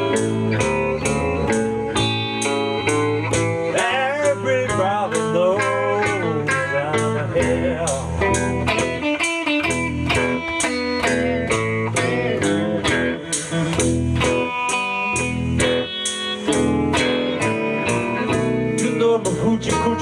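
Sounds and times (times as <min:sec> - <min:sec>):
beat and bass: 0:00.0 - 0:20.0
electric guitar playing blues: 0:00.0 - 0:20.0.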